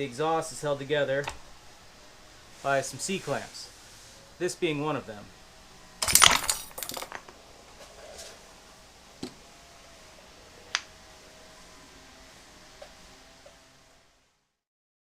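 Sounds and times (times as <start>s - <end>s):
metal parts clinking on workbench: 6.0s - 7.2s.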